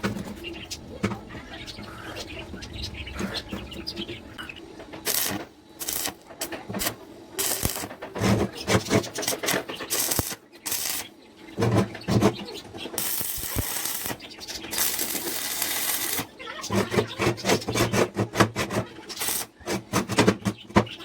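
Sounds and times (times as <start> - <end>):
steady hiss: 13.0 - 16.3.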